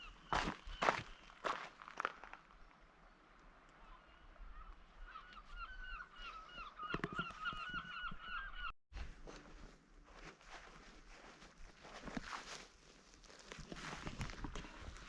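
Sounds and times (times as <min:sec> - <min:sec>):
footsteps on a path: 0:00.0 - 0:02.7, 0:09.0 - 0:15.0
bird calling: 0:03.8 - 0:08.8.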